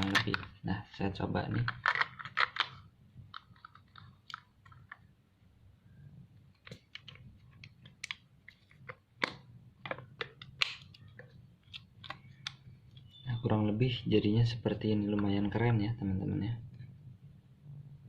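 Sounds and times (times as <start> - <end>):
hard plastic clicks and crunches: 0.0 - 0.6, 1.5 - 5.1.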